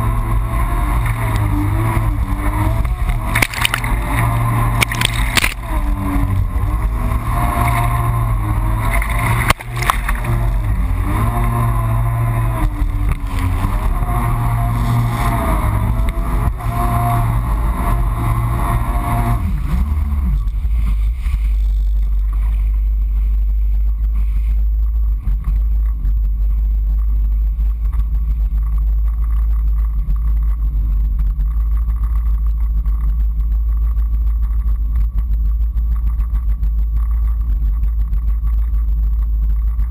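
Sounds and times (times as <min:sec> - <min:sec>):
jet ski engine: 0:00.0 - 0:39.9
water rushing: 0:00.3 - 0:23.7.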